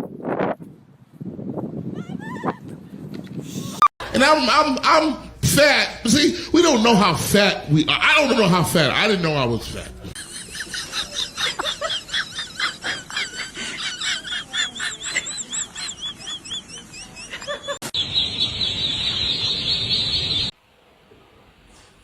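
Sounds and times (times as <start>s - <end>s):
high arching chirps: 15.2s - 20.5s.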